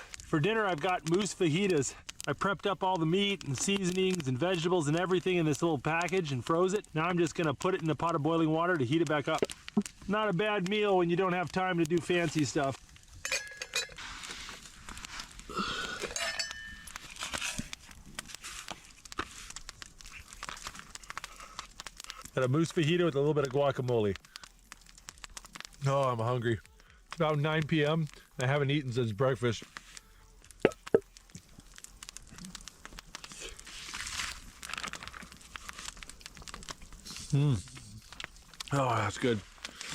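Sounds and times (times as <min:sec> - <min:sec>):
crinkling and rustling: 0:00.0 - 0:39.9
metal pot and utensils clinking: 0:13.2 - 0:14.0, 0:16.0 - 0:17.6
small ticks: 0:14.5 - 0:22.4, 0:23.4 - 0:28.5, 0:29.6 - 0:39.9.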